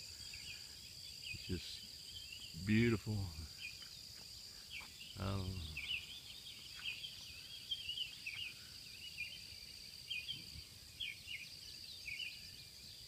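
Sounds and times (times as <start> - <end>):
birds chirping: 0.0 - 13.0
high-pitched insect chorus: 0.0 - 13.0.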